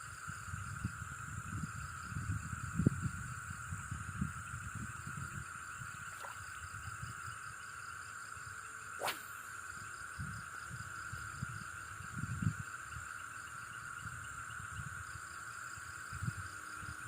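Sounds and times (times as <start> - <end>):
insects buzzing: 0.0 - 17.0
low rumbles of handling or wind: 0.2 - 8.2.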